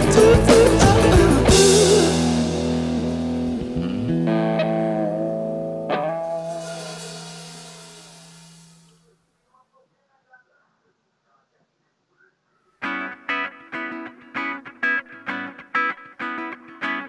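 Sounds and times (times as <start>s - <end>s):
band playing song ending: 0.0s - 8.9s
held guitar and bass chords: 0.0s - 9.0s.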